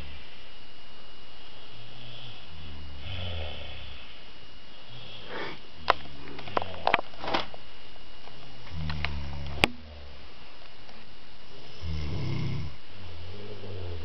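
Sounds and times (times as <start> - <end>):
girl snoring: 1.6 - 4.2, 4.8 - 5.6, 11.6 - 14.0.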